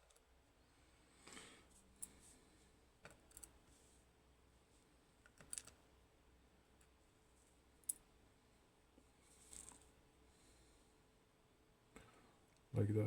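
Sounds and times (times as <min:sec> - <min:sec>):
small metal lock pins clicking: 0:03.0 - 0:03.5, 0:05.2 - 0:05.8.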